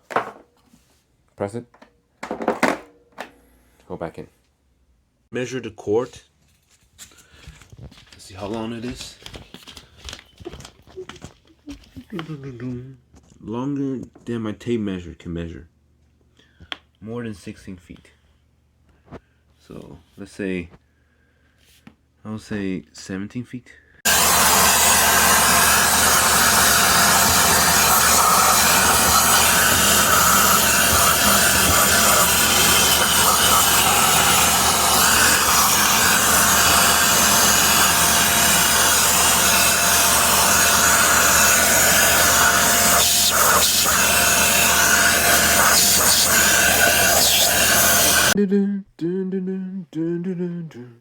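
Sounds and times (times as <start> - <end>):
vacuum cleaner running: 24.1 - 48.4.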